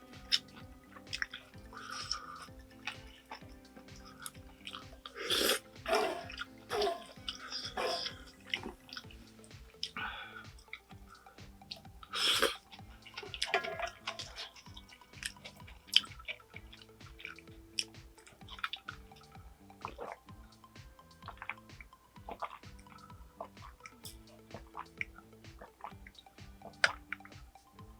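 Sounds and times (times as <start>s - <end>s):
quiet background music: 0.0s - 27.9s
slurp: 4.0s - 9.0s, 12.1s - 16.4s.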